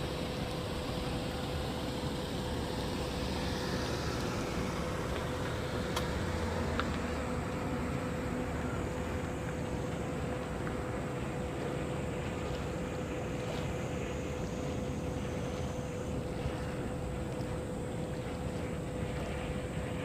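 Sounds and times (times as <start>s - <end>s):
boat diesel engine rumble: 0.0s - 20.0s
constant hum: 0.0s - 20.0s.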